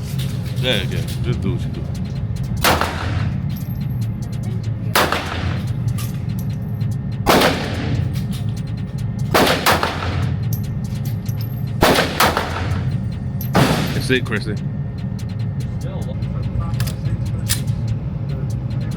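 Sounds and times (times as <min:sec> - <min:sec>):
steady low hum: 0:00.0 - 0:18.9
pistol shots echoing indoors: 0:02.6 - 0:03.3, 0:05.0 - 0:05.7, 0:07.3 - 0:08.2, 0:09.3 - 0:10.4, 0:11.8 - 0:12.9, 0:13.5 - 0:14.0
faint distant gunshots: 0:07.3 - 0:08.1, 0:11.8 - 0:12.8.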